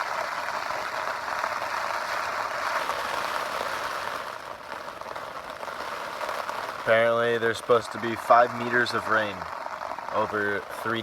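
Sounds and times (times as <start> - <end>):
heavy rain falling: 0.0 - 11.0.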